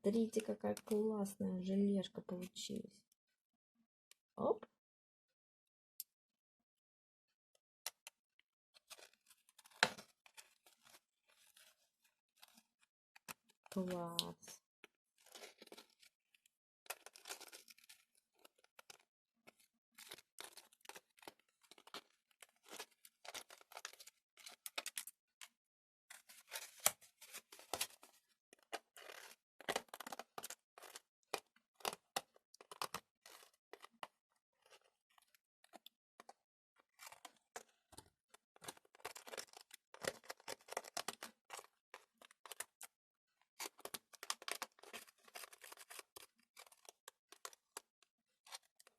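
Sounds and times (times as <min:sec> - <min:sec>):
plastic moulds crinkling: 0:00.1 - 0:01.0, 0:08.8 - 0:14.6, 0:15.2 - 0:25.2, 0:26.1 - 0:42.8, 0:43.6 - 0:48.9.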